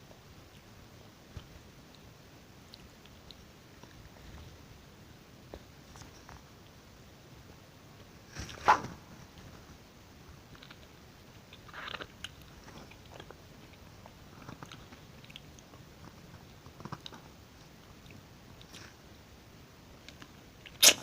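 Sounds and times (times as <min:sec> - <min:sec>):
wet chewing: 0:01.4 - 0:04.6, 0:10.5 - 0:19.0.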